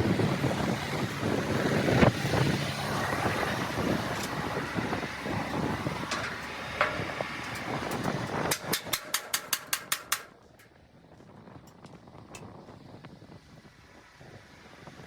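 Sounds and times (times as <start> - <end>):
vehicle running: 0.0 - 10.9
sharp clicks: 6.1 - 10.3.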